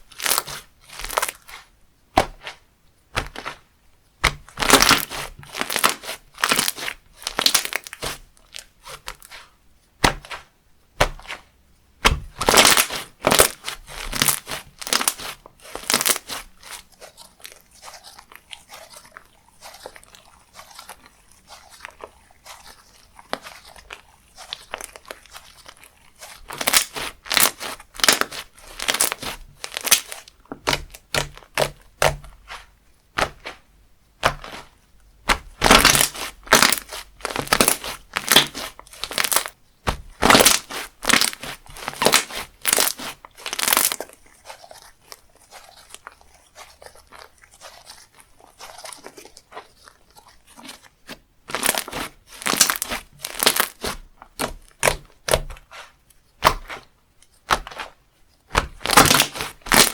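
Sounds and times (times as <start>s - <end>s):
slime crackling and popping: 0.0s - 2.6s, 3.2s - 3.6s, 4.2s - 11.4s, 12.0s - 59.9s.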